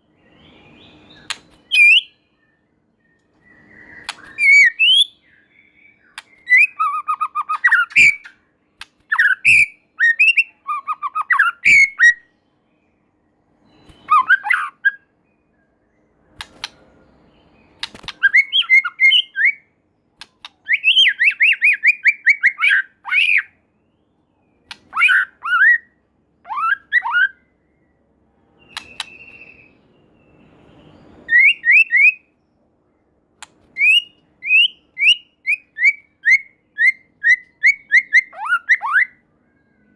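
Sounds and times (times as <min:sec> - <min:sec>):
bird singing whistled notes: 0:00.0 - 0:19.8, 0:20.4 - 0:39.9
sharp clicks: 0:01.2 - 0:01.6, 0:04.0 - 0:04.4, 0:06.1 - 0:06.5, 0:08.8 - 0:09.1, 0:16.4 - 0:16.8, 0:17.8 - 0:18.3, 0:20.2 - 0:20.6, 0:24.6 - 0:24.9, 0:28.7 - 0:29.4, 0:33.4 - 0:33.8.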